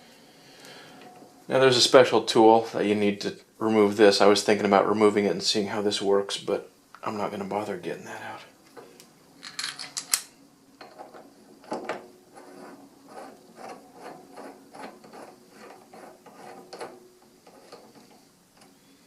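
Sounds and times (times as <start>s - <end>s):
metal parts clinking and knocking: 9.4s - 11.0s.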